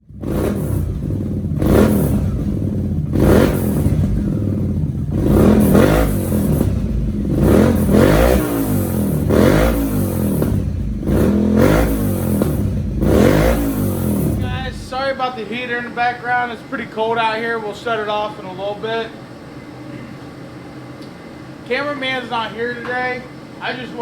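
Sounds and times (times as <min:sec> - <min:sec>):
space heater humming: 0:13.7 - 0:24.0.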